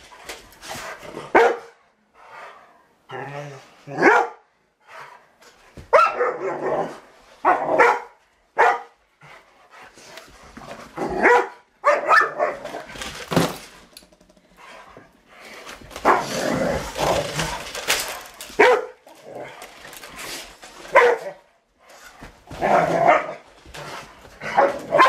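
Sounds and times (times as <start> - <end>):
dog barking: 1.3 - 1.8, 4.0 - 4.5, 5.9 - 6.8, 7.4 - 9.0, 11.2 - 12.6, 18.6 - 19.0, 20.9 - 21.4, 24.5 - 25.0.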